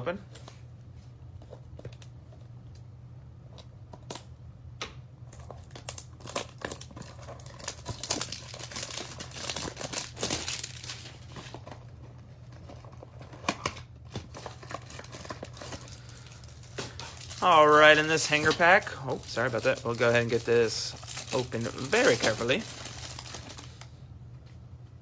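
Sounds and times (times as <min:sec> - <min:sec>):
cardboard packaging tearing and crinkling: 0:05.5 - 0:23.9.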